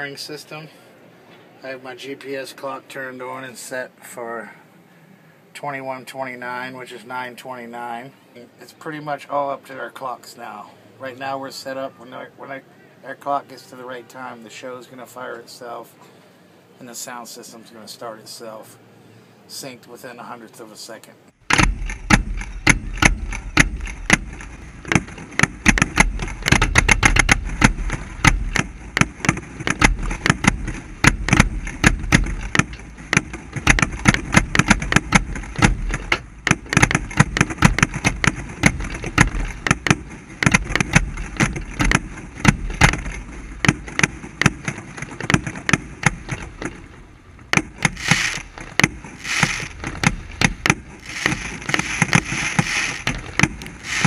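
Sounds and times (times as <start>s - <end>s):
fireworks bangs and pops: 21.4s - 46.8s, 47.5s - 54.0s
fireworks hissing: 47.8s - 54.0s.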